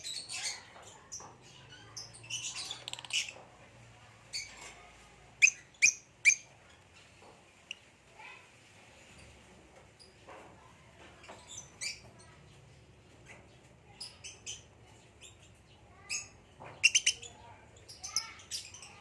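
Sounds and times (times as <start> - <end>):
lovebirds chirping: 5.4 - 7.9, 13.2 - 19.0.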